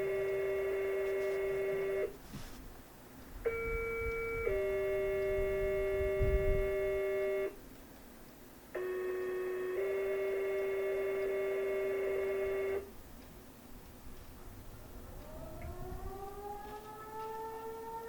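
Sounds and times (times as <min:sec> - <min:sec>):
two-tone pager test tones: 0:00.0 - 0:02.1, 0:03.5 - 0:07.6, 0:08.8 - 0:12.9.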